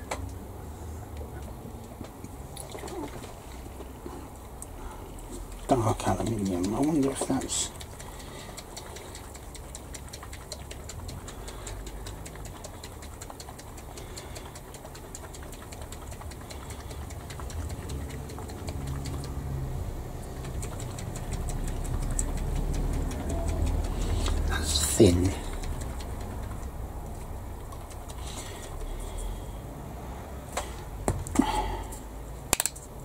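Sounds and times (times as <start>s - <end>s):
fast even ticking: 5.4s - 29.2s.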